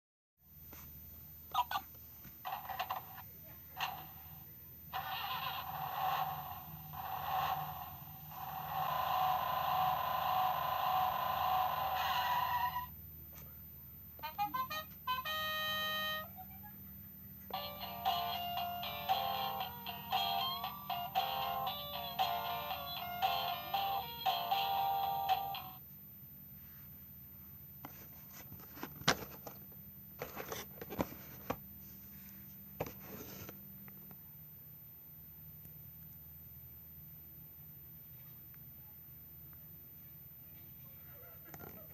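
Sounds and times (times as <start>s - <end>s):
electronic engine revving sound: 5.0s - 12.8s.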